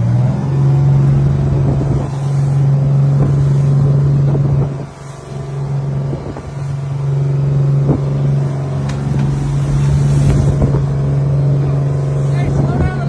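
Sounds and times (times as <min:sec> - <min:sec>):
boat engine running: 0:00.0 - 0:13.0
light knocks: 0:08.8 - 0:09.4.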